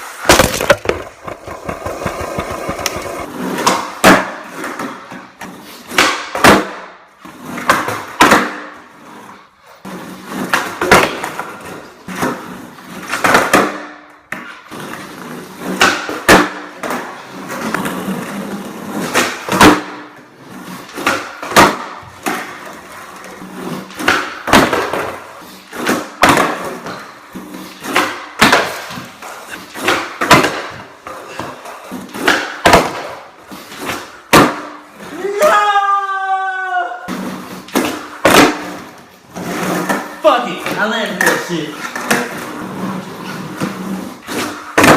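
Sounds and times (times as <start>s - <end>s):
skateboard popping and landing: 0.0s - 9.2s, 9.8s - 35.2s, 37.0s - 44.9s
skateboard wheels rolling: 0.0s - 44.9s.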